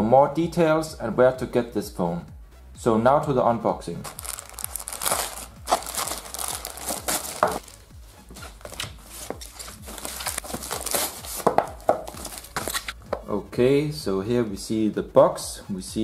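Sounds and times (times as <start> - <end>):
packaging crinkling and rustling: 4.0 - 13.0
packaging tearing: 4.1 - 7.8, 8.5 - 13.0.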